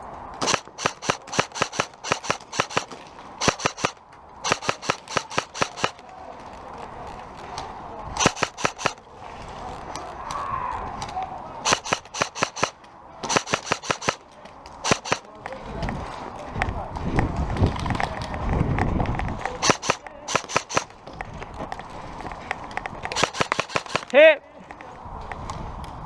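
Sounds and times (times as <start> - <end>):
airsoft rifle firing: 0.4 - 6.0, 8.2 - 9.0, 11.6 - 14.2, 14.8 - 15.3, 19.6 - 20.9, 23.1 - 24.2.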